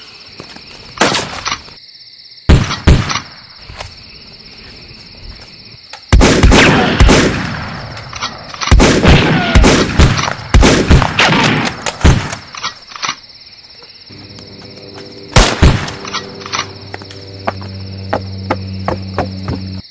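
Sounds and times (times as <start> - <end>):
crickets chirping: 0.0 - 19.9
rapid gunshots: 2.5 - 3.3, 6.1 - 7.9, 8.6 - 12.5, 15.4 - 16.1.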